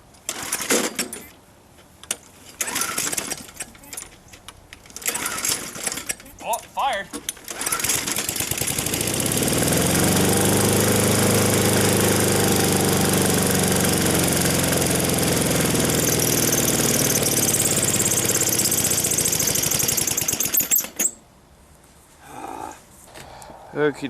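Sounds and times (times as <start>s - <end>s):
small mower engine at full throttle: 7.5s - 20.8s.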